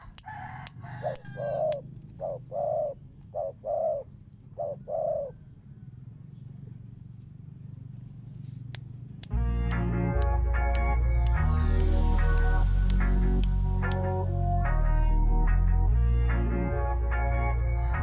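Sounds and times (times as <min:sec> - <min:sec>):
dove cooing: 0:00.9 - 0:05.5.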